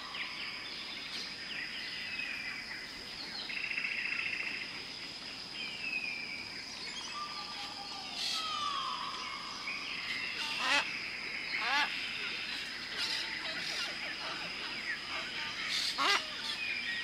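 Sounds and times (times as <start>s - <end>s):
high insect drone: 0.0s - 17.0s
birds calling: 6.8s - 17.0s.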